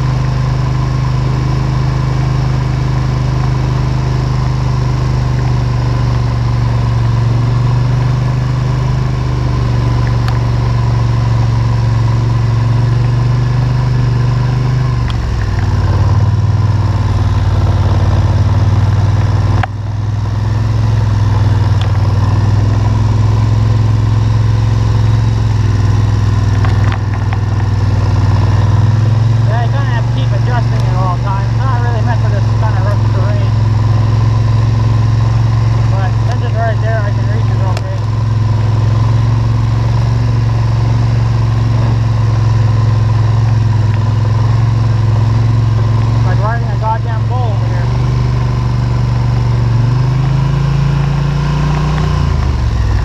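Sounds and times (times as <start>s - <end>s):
engine running steadily: 0.0s - 53.0s.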